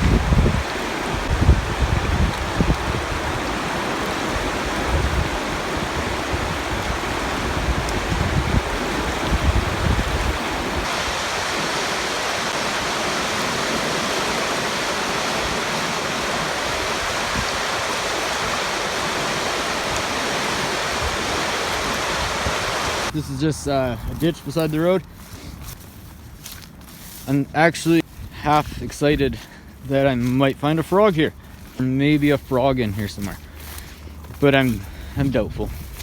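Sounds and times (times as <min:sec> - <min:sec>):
water rushing over rocks: 0:00.0 - 0:23.2
wind buffeting microphone: 0:00.0 - 0:25.8, 0:31.1 - 0:36.0.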